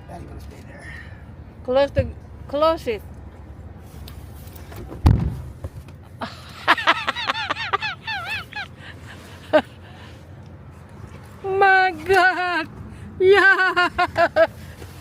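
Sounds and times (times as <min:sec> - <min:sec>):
thump: 0:04.7 - 0:05.8.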